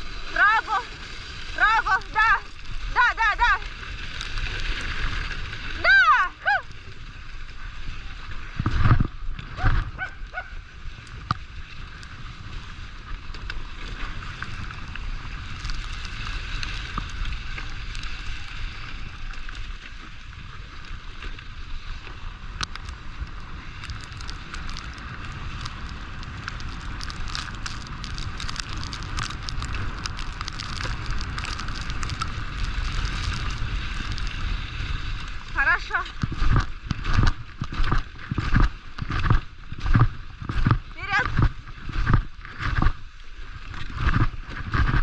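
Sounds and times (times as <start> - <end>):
sled gliding over snow: 0.0 - 45.0
wind rumbling on microphone: 0.0 - 45.0
small crunching ticks: 0.2 - 5.5, 10.9 - 19.6, 22.6 - 34.8.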